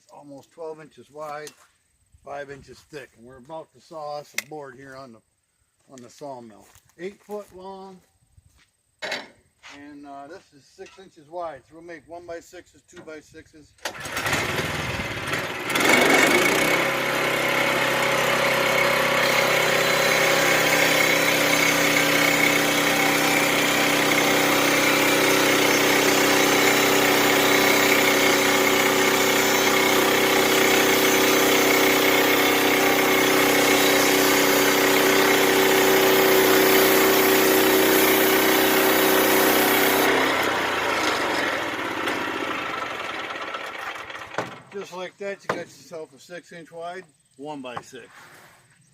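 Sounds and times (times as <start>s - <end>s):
sawmill engine drone: 13.9s - 45.6s
saw blade whine: 14.1s - 46.1s.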